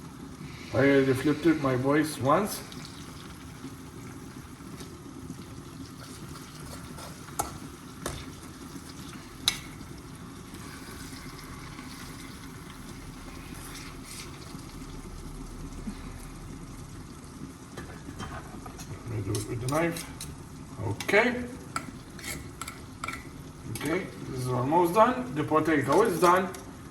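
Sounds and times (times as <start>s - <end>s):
chicken sizzling in a pan: 0.0s - 26.9s
utensil clicking against pan: 21.8s - 24.0s.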